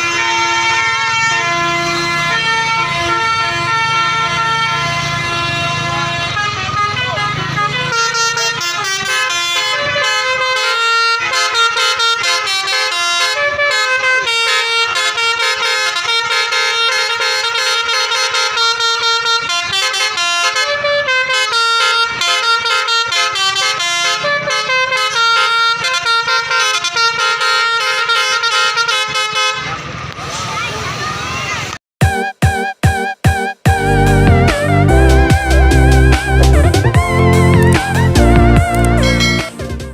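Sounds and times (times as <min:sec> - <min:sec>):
multi-tone musical bus horns: 0:00.0 - 0:30.0, 0:32.0 - 0:39.9.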